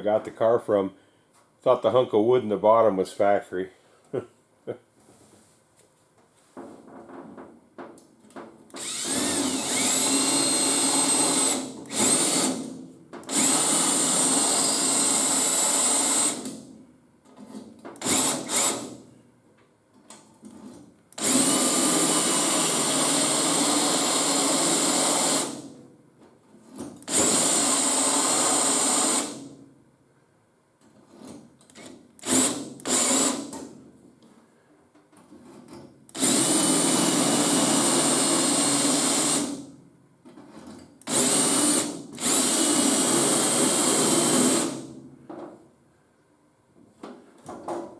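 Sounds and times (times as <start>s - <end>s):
power tool whining on sheet metal: 8.8s - 12.6s, 13.3s - 16.4s.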